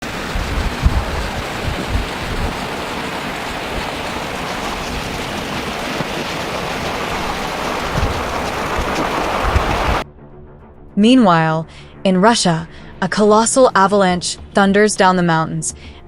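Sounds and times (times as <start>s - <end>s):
heavy rain pouring: 0.0s - 10.0s
low thumps: 0.4s - 10.0s.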